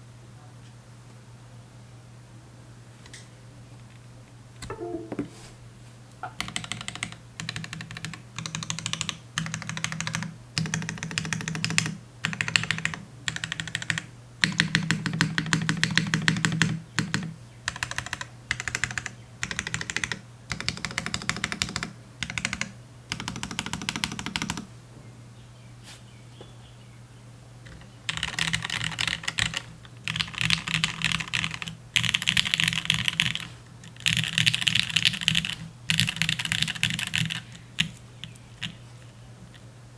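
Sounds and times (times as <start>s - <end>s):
mechanical keyboard typing: 6.4s - 24.7s, 27.7s - 38.0s.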